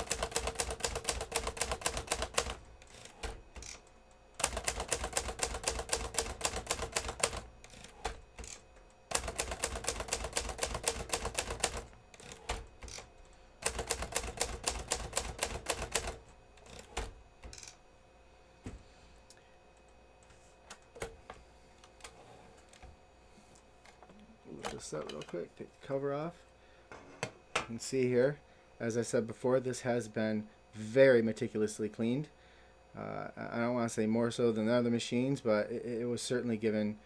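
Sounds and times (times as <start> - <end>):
typewriter keystrokes: 0.0 - 17.8.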